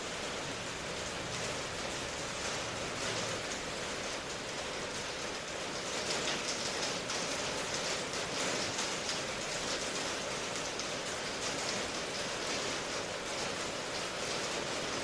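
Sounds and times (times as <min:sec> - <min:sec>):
steady rainfall hiss: 0:00.0 - 0:15.0.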